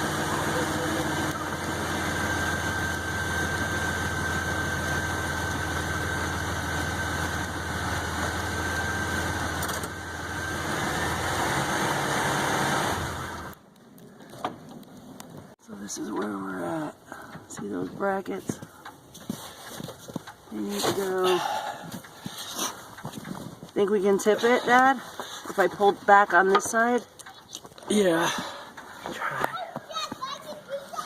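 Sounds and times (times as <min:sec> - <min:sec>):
thin steady whine: 0:00.0 - 0:10.8
truck engine idling: 0:00.0 - 0:13.6.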